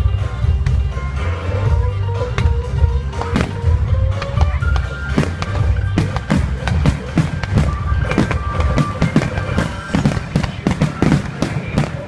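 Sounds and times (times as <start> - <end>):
music with held notes: 0.0 - 12.0
fireworks bangs and crackles: 2.2 - 12.0.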